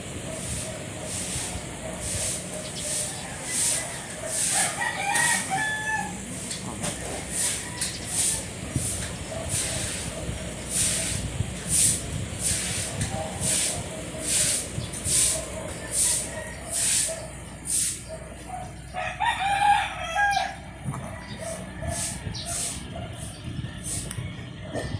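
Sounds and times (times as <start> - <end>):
dog drawn-out call: 13.2 - 18.9.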